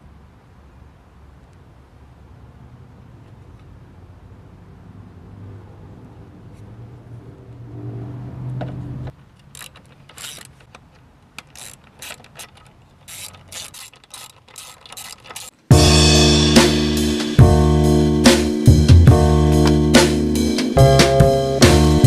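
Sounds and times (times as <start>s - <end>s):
socket ratchet clicking: 9.4s - 15.7s
loud music: 15.7s - 22.0s.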